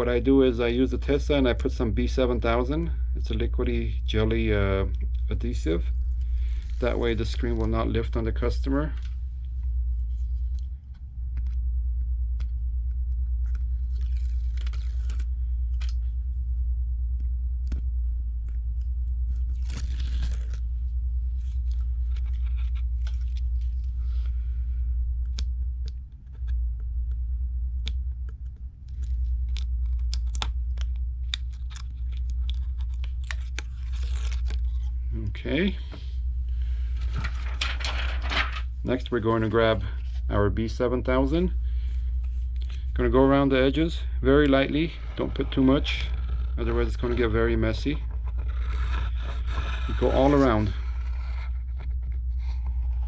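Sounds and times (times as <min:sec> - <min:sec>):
steady low hum: 0:00.0 - 0:53.0
protective film peeling and tearing: 0:06.3 - 0:08.0, 0:13.7 - 0:16.0, 0:19.3 - 0:20.7, 0:21.3 - 0:23.9, 0:28.8 - 0:35.0, 0:37.0 - 0:38.7.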